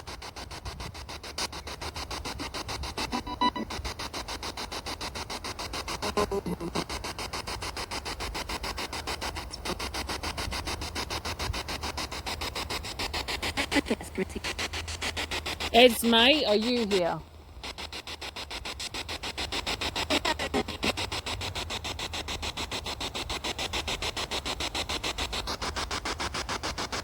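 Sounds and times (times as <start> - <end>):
choppy radio static pulsing: 0.0 - 25.7
snatches of radio broadcast: 2.2 - 3.9, 5.8 - 7.6, 13.5 - 19.1, 20.0 - 21.1.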